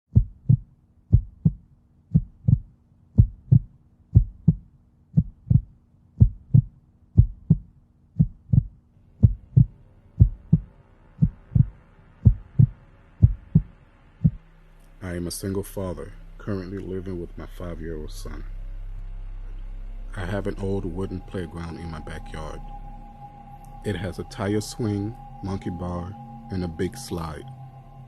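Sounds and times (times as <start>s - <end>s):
heartbeat thumps: 0.1s - 14.4s.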